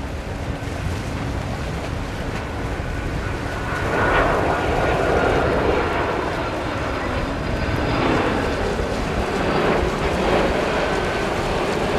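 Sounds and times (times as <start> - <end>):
jet engines roaring: 0.0 - 11.9
thin steady whine: 3.3 - 11.9.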